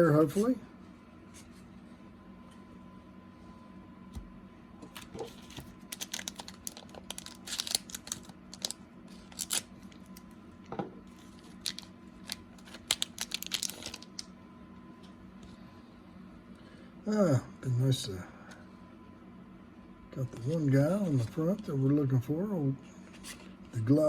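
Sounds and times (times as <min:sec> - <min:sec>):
cards and packaging rustling: 0:04.8 - 0:10.2, 0:11.1 - 0:14.3.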